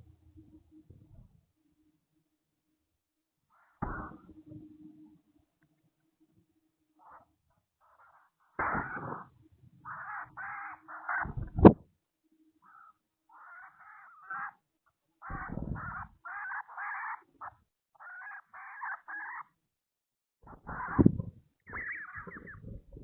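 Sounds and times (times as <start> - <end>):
bird calling harshly: 9.9 - 11.4, 12.6 - 14.6, 15.2 - 19.4, 21.7 - 22.7.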